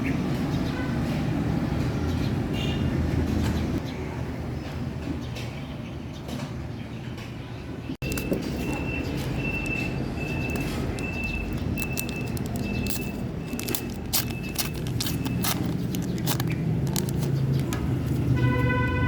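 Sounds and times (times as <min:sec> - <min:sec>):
high electronic beeps: 0:08.0 - 0:15.6
sharp clicks and crackles: 0:08.0 - 0:18.2.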